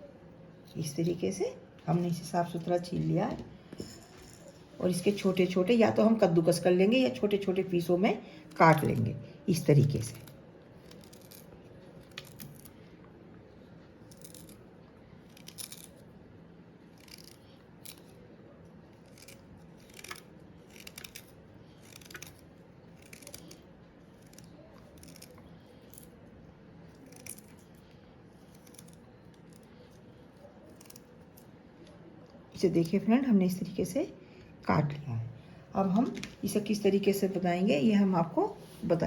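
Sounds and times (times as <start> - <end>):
knife cutting ginger: 16.9 - 18.3, 19.0 - 26.1.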